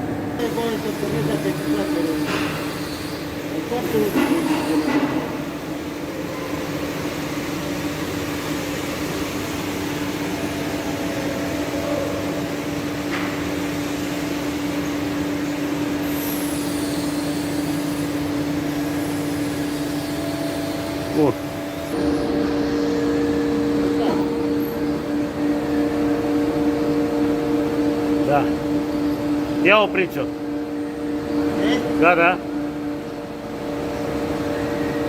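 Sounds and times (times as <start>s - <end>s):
machine hiss: 0.4s - 31.5s
grinder humming: 8.8s - 30.2s.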